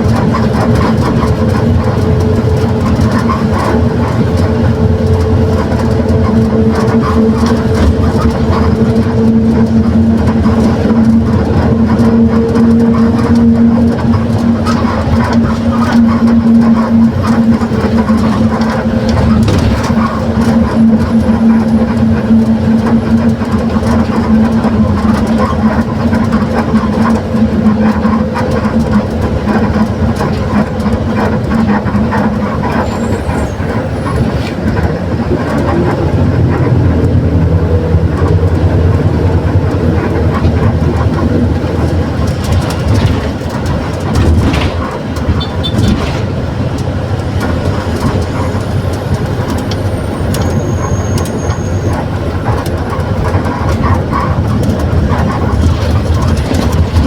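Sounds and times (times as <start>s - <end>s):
body rattles: 0.0s - 57.0s
bus diesel engine running: 0.0s - 57.0s.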